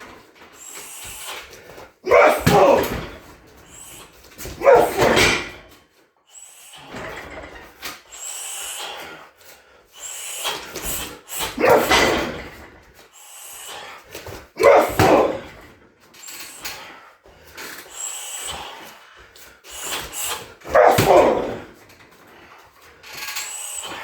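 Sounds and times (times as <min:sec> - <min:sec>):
kicks hitting heavy bag: 0:02.1 - 0:03.3, 0:04.5 - 0:05.7, 0:14.6 - 0:15.6, 0:20.7 - 0:21.8.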